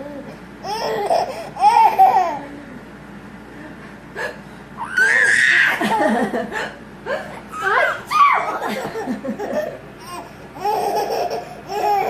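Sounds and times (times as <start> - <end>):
baby laughing hysterically: 7.6 - 12.0.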